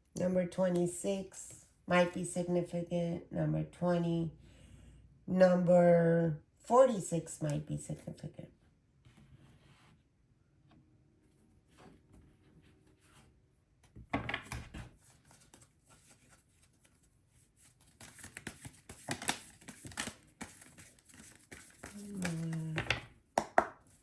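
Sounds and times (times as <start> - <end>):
cards being shuffled: 14.4 - 23.1
person humming: 21.9 - 23.0.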